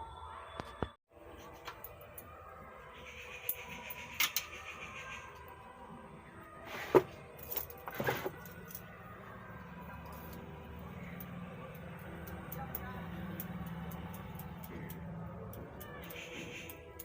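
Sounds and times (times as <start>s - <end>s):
tools clattering on a workbench: 6.7s - 8.8s.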